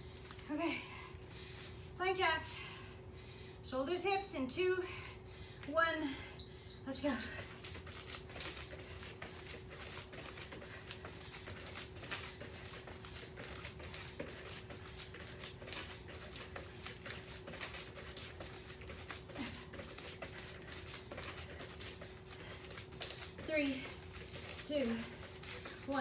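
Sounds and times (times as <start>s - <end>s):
faint steady hum: 0.0s - 26.0s
feet hopping on floor: 7.3s - 26.0s.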